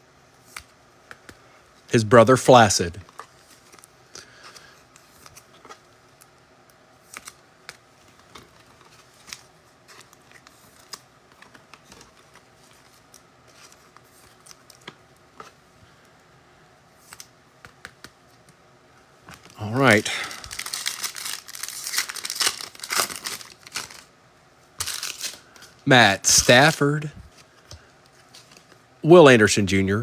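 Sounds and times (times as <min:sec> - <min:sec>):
trading cards clicking and snapping: 0:17.0 - 0:18.6.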